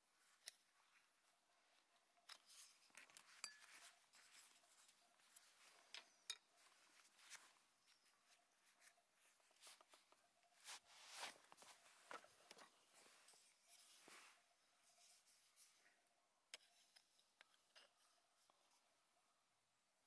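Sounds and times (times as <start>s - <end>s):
small clicks and light scrapes: 0.2s - 18.8s.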